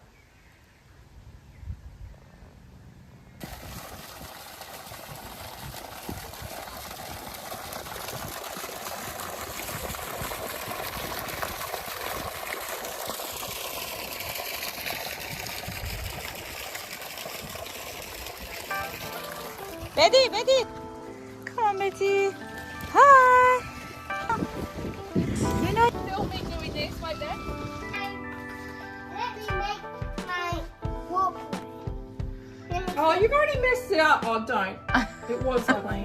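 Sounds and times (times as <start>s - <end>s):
running water rushing: 3.4s - 30.6s.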